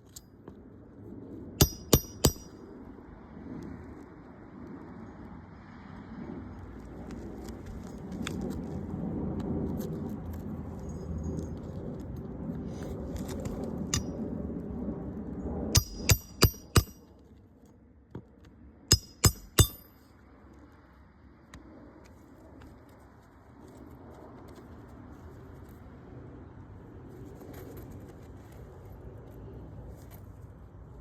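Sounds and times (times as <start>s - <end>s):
hammer striking metal: 1.6s - 2.5s, 15.8s - 17.0s, 18.9s - 20.0s.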